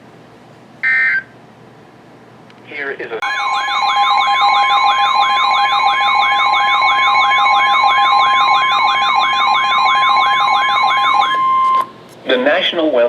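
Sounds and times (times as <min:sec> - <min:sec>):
warbling siren: 0:03.2 - 0:11.9
steady high tone: 0:03.2 - 0:12.6.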